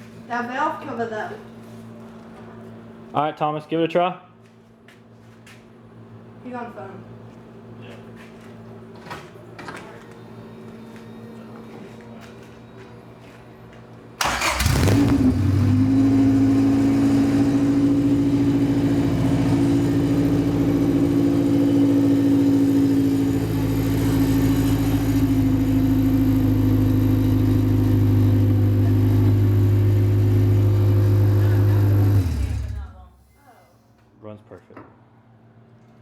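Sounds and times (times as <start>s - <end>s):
car engine cranking and idling: 14.2s - 33.0s.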